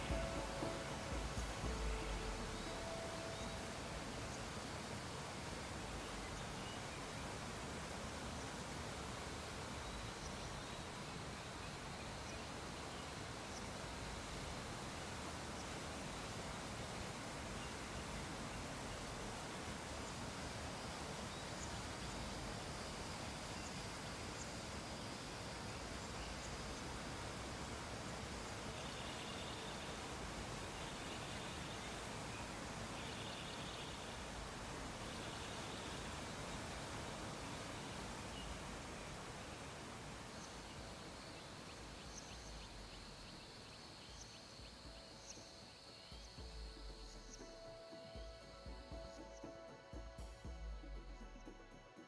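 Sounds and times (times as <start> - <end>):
faint high-pitched tone: 0.0 - 7.3
low hiss: 0.0 - 52.0.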